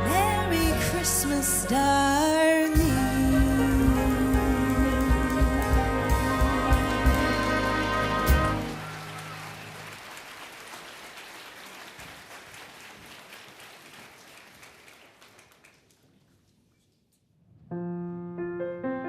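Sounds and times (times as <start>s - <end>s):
piano introduction: 0.0s - 10.0s, 17.6s - 19.0s
audience applause: 4.7s - 16.2s.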